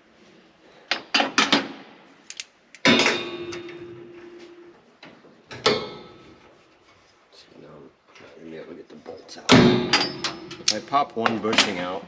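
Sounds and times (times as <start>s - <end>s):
metal tools clanking: 2.8s - 4.6s, 9.5s - 12.0s.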